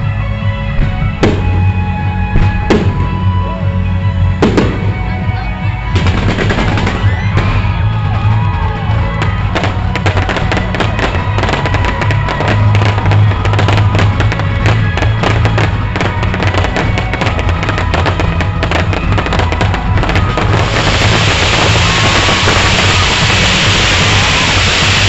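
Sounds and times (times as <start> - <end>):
loud show music: 0.0 - 25.0
fireworks cracking and banging: 0.8 - 3.4, 4.3 - 5.2, 5.8 - 25.0
fireworks hissing: 9.2 - 25.0.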